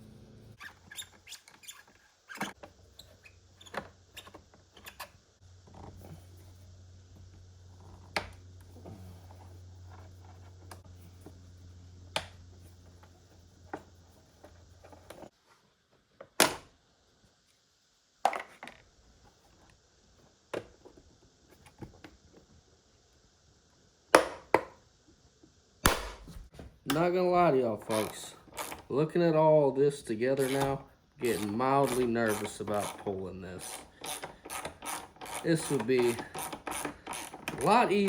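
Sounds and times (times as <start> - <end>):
low steady hum: 0.0 - 0.6, 2.6 - 15.3
hand tools clicking and knocking: 30.4 - 37.9.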